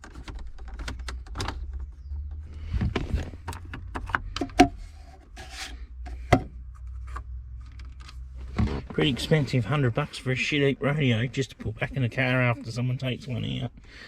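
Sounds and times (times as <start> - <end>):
hard plastic clicks and knocks: 0.0 - 4.8
low steady hum: 1.7 - 14.0.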